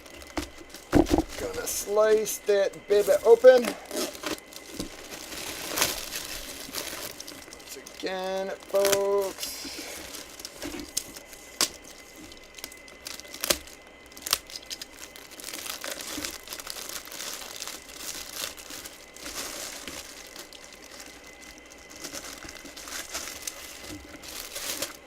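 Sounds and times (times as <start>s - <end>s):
packaging crinkling and tearing: 0.0s - 25.0s.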